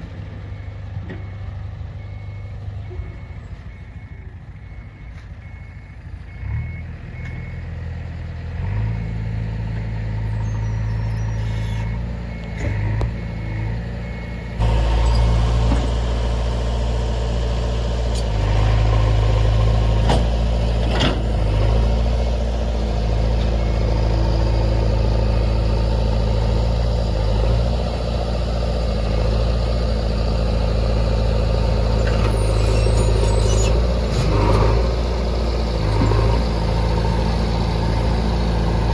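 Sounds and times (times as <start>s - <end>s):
heavy diesel engine running: 0.0s - 38.9s
reversing alarm beeping: 0.4s - 7.8s, 9.6s - 16.6s, 22.8s - 26.8s.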